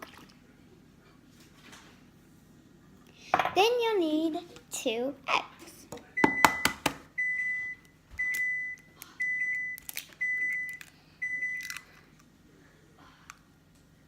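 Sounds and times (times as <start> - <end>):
microwave oven beeping: 6.2 - 11.9.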